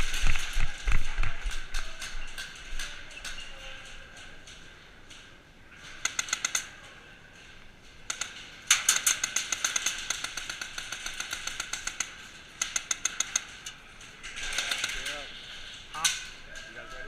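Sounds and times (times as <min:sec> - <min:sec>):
airsoft guns firing bursts: 0:08.1 - 0:13.5.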